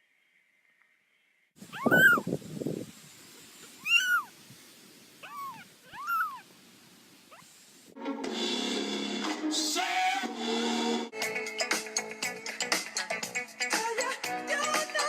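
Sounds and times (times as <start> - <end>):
cat meowing: 1.6 - 2.3, 3.8 - 4.3, 5.2 - 6.4
music: 8.0 - 15.0.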